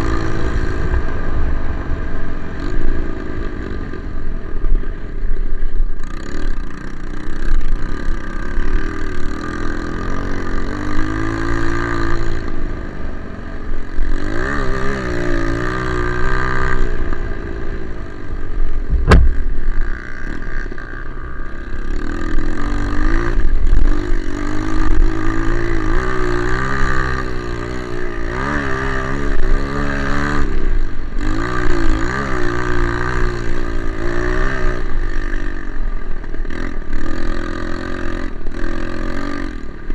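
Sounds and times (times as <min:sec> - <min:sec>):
motorcycle engine revving: 0:00.0 - 0:39.9
sharp knock: 0:18.9 - 0:19.5.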